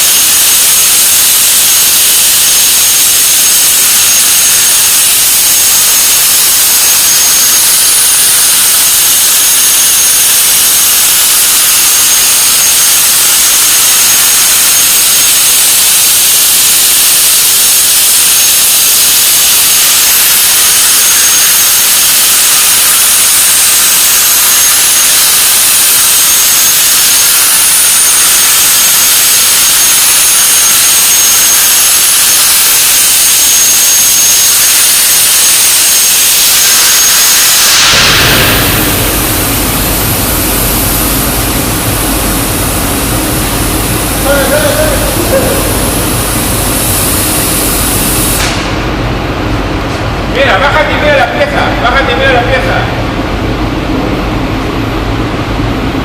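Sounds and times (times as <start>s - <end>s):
plasma torch hissing: 0.0s - 49.0s.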